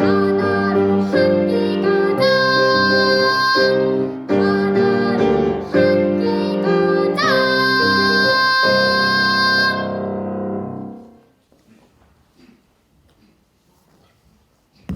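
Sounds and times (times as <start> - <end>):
child singing: 0.0 - 10.1
faint room sounds: 10.2 - 14.9.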